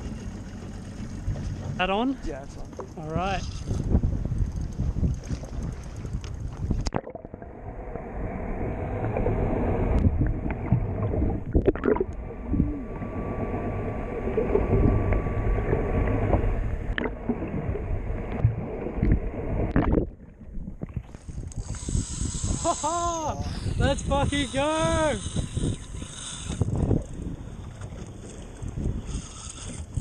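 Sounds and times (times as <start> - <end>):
muffled water sloshing: 0.0 - 21.6
low rumble: 0.0 - 22.4.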